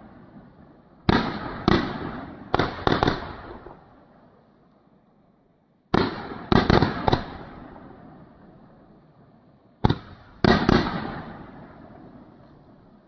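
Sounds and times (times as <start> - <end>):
firework shots echoing: 0.0 - 4.2, 5.9 - 9.0, 9.8 - 13.0.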